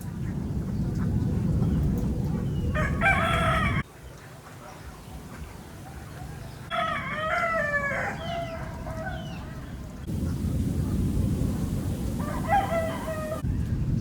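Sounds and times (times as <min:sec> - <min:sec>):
rooster crowing: 0:02.8 - 0:03.8, 0:06.4 - 0:09.6, 0:12.2 - 0:13.5
loud low rushing noise: 0:10.0 - 0:14.0.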